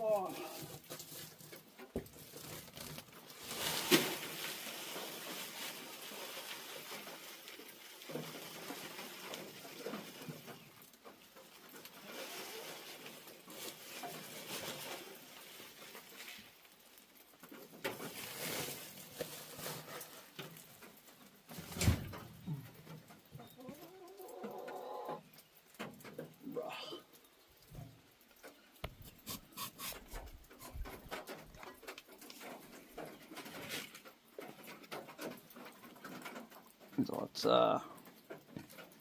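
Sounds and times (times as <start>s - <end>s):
hens murmuring: 22.4s - 25.4s.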